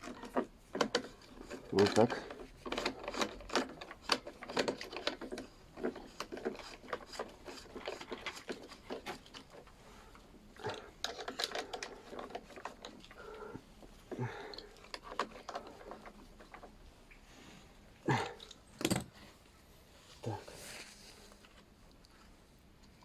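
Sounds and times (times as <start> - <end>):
small metal parts rattling: 0.0 - 9.8, 10.6 - 13.4.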